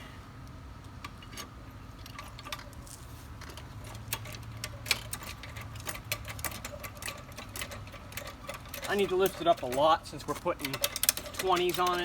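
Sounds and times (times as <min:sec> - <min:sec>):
jack metallic clicks: 0:03.4 - 0:12.0.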